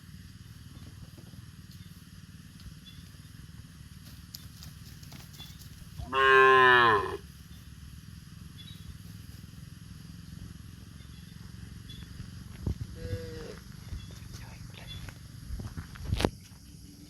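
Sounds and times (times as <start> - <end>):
cow mooing: 6.0 - 7.2.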